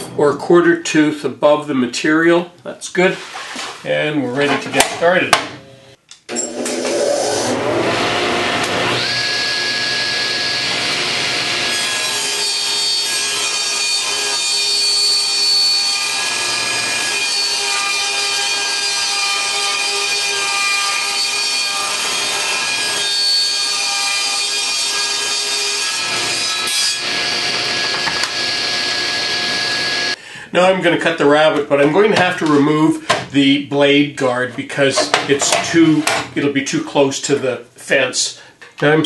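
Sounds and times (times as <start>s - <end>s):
table saw ripping wood: 6.3s - 30.2s.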